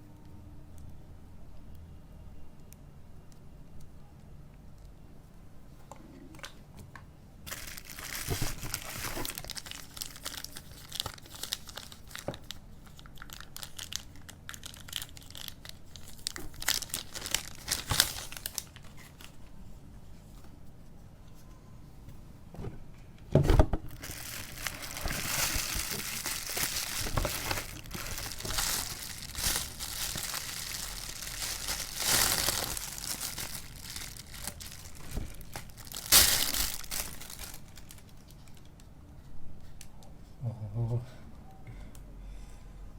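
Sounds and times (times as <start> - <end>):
plastic packaging crinkling: 7.5 - 19.6, 23.9 - 38.9.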